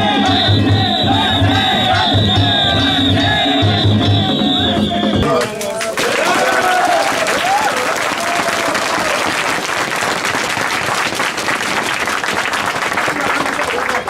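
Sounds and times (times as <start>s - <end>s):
crowd applauding: 0.0s - 4.5s, 5.2s - 14.0s
voices calling out: 0.0s - 7.8s.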